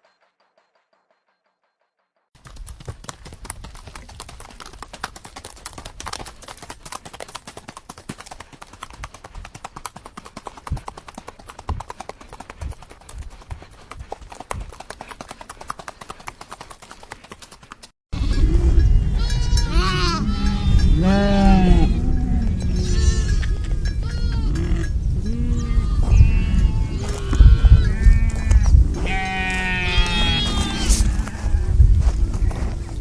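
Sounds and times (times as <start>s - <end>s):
horse hooves clip-clopping: 2.4s - 17.9s, 26.1s - 33.0s.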